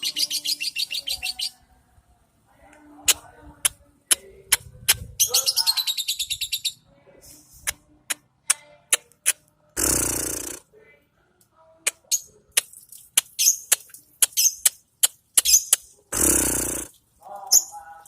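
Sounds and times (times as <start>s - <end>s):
harsh noisy burst: 9.8s - 10.6s, 16.1s - 16.9s
lovebird chattering trill: 9.8s - 10.6s.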